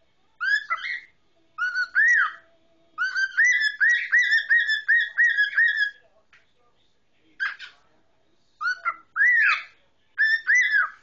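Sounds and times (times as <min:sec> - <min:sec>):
cockatiel whistling: 0:00.4 - 0:02.4, 0:03.0 - 0:06.0, 0:08.6 - 0:11.0.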